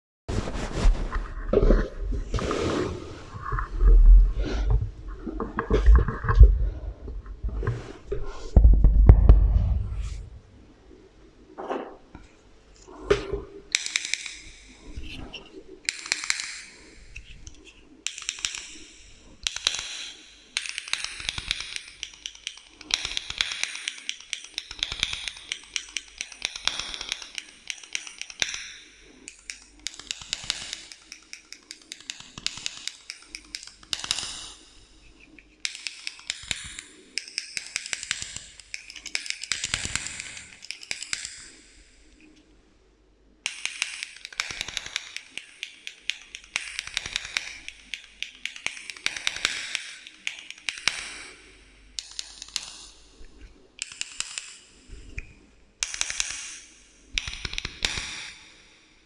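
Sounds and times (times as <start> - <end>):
tapping and scratching on objects: 13.0 - 42.4, 43.5 - 52.9, 55.8 - 58.2.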